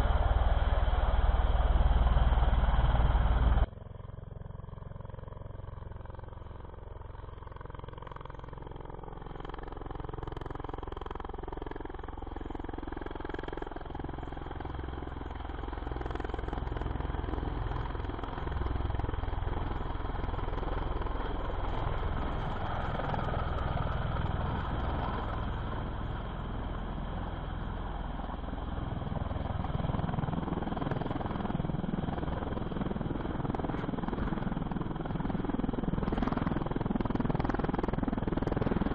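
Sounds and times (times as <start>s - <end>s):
engine running: 0.0s - 3.7s.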